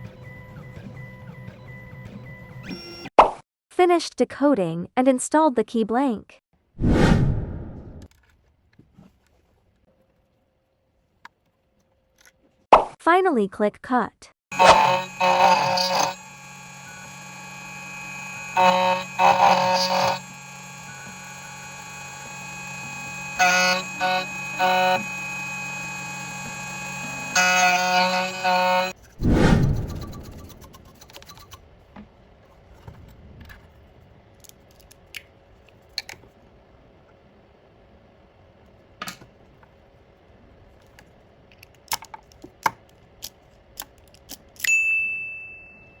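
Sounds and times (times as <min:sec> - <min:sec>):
cutter screeching on metal: 0:14.5 - 0:29.1
machine spindle humming: 0:14.5 - 0:31.6
metal parts clicking and tapping: 0:41.5 - 0:44.7.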